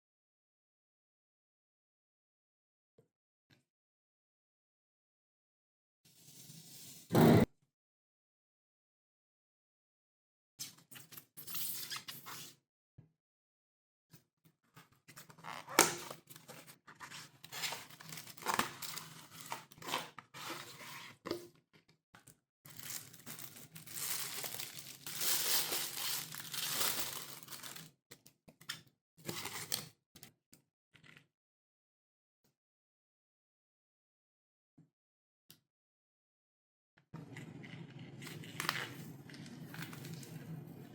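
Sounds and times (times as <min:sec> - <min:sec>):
packaging crinkling and tearing: 0:17.5 - 0:20.6, 0:22.7 - 0:27.9.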